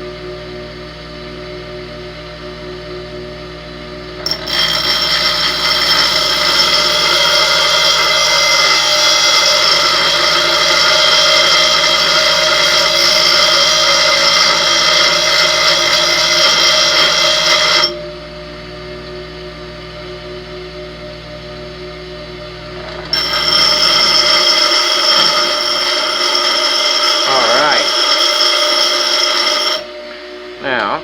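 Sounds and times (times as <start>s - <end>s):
power tool cutting metal: 4.2s - 18.0s, 22.8s - 30.0s.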